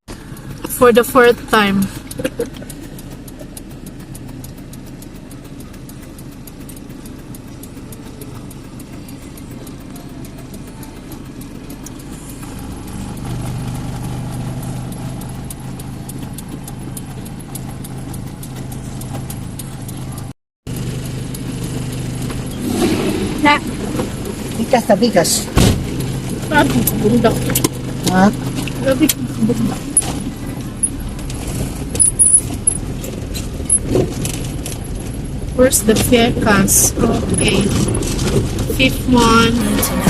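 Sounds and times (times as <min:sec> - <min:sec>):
car engine and road rumble: 0:00.0 - 0:40.0
light rattling clicks: 0:00.1 - 0:22.4.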